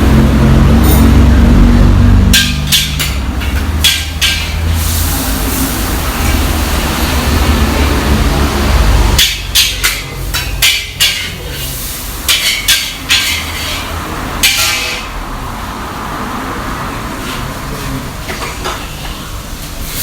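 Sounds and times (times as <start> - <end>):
metal cookware clanking: 2.2 - 5.5, 9.2 - 15.2
restaurant kitchen hiss: 2.4 - 20.0.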